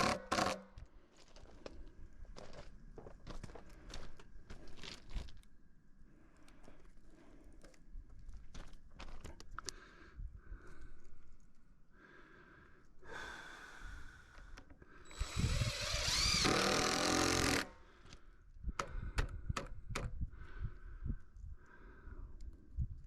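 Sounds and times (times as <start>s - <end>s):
power tool motor running: 0.0s - 0.6s, 15.1s - 17.8s.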